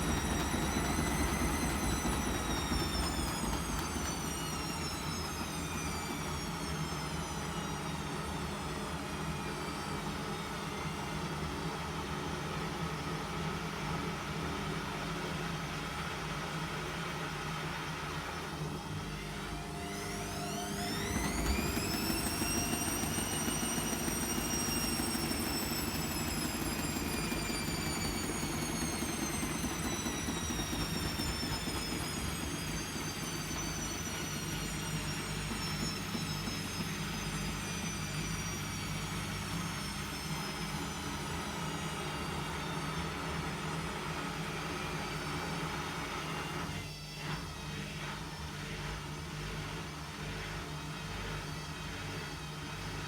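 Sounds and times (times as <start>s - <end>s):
washing machine spinning: 0.0s - 11.2s, 19.6s - 44.2s.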